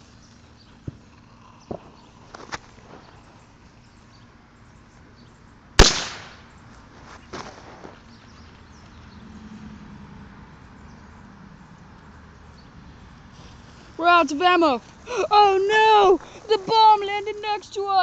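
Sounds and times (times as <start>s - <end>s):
firework bang with echo: 5.8s - 6.4s
faint firework pops: 5.8s - 6.5s.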